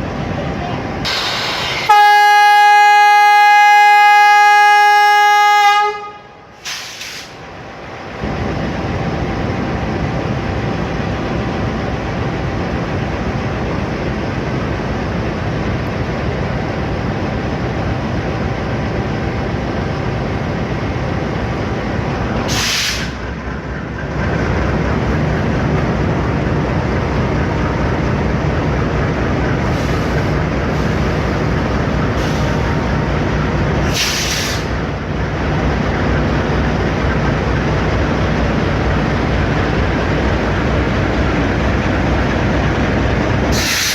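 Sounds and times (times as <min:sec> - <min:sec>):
train wheels rumbling on rails: 0:00.0 - 0:43.9
short hissing bursts: 0:06.6 - 0:07.4, 0:22.5 - 0:23.2, 0:33.9 - 0:34.7, 0:43.5 - 0:43.9.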